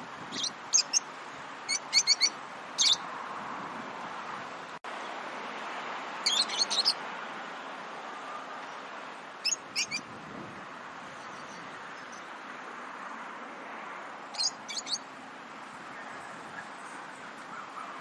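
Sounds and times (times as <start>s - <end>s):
lovebirds chirping: 0.3s - 3.1s, 6.2s - 7.0s, 9.4s - 10.1s, 11.0s - 12.4s, 14.3s - 18.0s.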